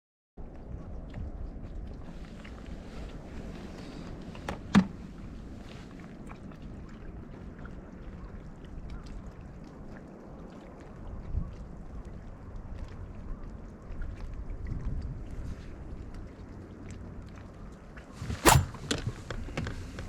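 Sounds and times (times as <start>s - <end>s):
dull thump: 18.4s - 18.8s
sharp knocks: 18.4s - 18.8s.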